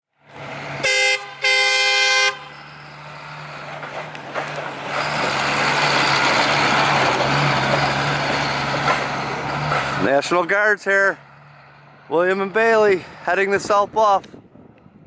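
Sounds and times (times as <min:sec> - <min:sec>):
vehicle engine humming: 0:00.2 - 0:15.0
vehicle horn honking: 0:00.8 - 0:02.7.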